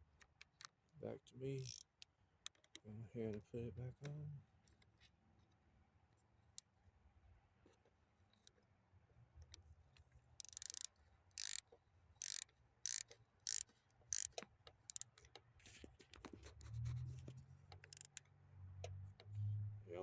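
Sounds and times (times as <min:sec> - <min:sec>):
ratchet wrench clicking: 0:01.6 - 0:02.8, 0:10.4 - 0:11.6, 0:12.2 - 0:15.4, 0:17.7 - 0:18.2.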